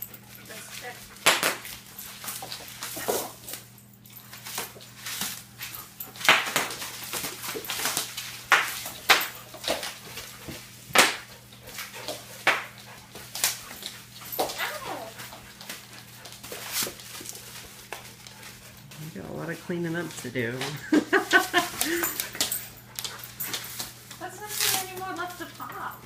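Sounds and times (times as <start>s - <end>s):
bubble wrap crinkling and snapping: 14.5s - 18.3s, 23.6s - 25.6s.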